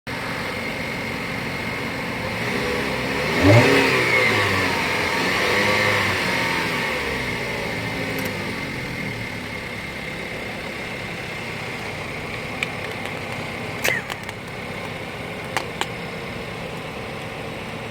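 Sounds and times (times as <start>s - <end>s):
car engine revving: 0.3s - 17.9s.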